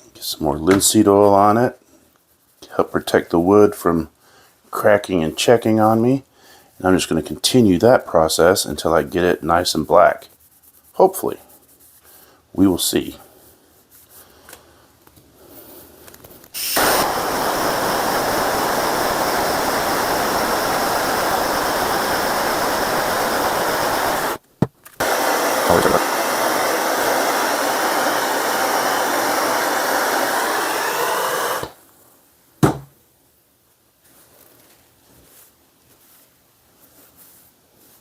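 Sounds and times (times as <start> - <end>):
torch click: 16.5 - 26.2, 28.2 - 31.8
gas torch flame hissing: 16.6 - 24.4, 25.0 - 31.8.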